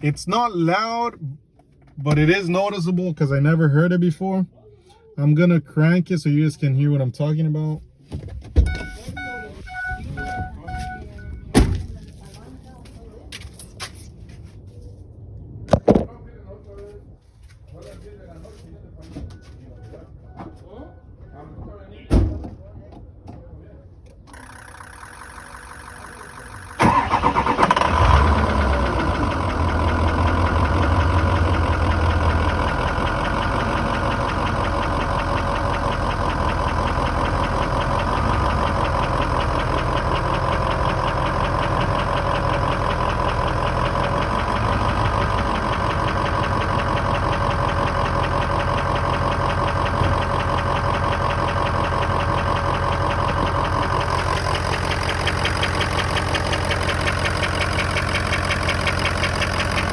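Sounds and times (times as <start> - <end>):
diesel engine starting and idling: 8.6 - 12.4, 24.3 - 59.9.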